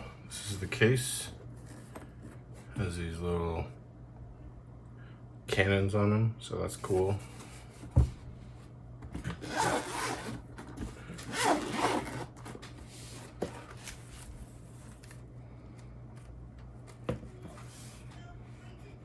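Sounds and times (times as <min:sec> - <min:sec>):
packaging rustling and scraping: 0:09.2 - 0:15.2.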